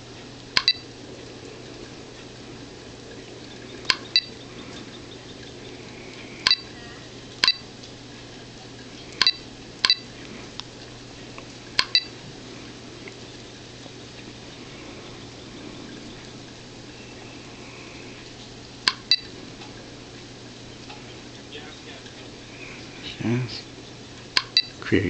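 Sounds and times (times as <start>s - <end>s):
faint steady hum: 0.0s - 25.0s
touchscreen click tones: 0.6s - 0.8s, 6.5s - 6.7s, 7.4s - 7.6s, 9.2s - 10.0s, 11.8s - 12.1s.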